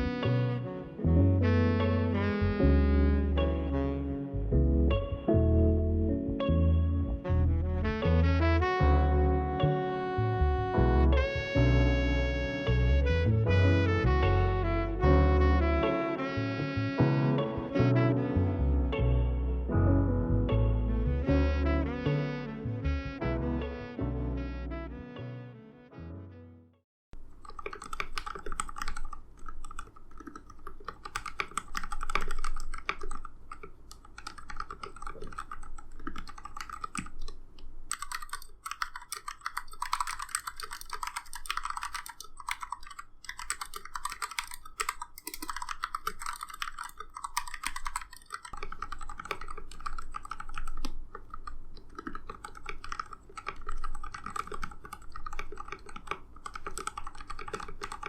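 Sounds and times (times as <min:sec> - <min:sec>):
mechanical keyboard typing: 0:27.2 - 0:58.0.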